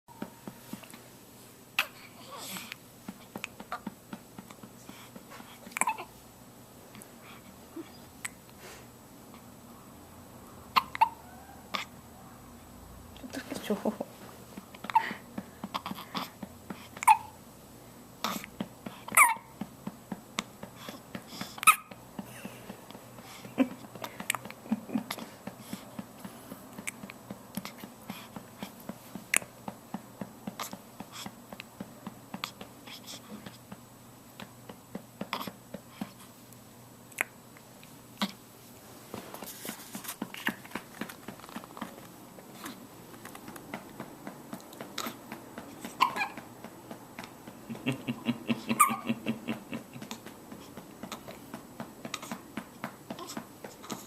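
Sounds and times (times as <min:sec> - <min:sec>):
pet hiccuping: 0:05.7 - 0:06.1, 0:10.7 - 0:12.0, 0:17.0 - 0:17.4, 0:19.1 - 0:19.5, 0:21.6 - 0:22.0, 0:45.8 - 0:46.4, 0:48.7 - 0:49.3.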